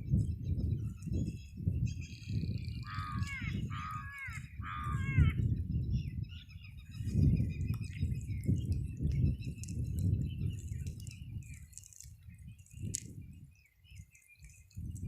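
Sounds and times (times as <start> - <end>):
crow cawing: 2.8 - 5.4.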